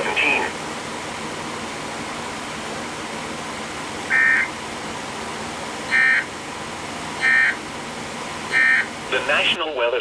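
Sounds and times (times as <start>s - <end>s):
radio hiss: 0.0s - 0.8s, 7.1s - 10.0s
two-tone buzzing data tones: 4.1s - 4.5s, 5.9s - 6.3s, 7.2s - 7.6s, 8.5s - 9.0s.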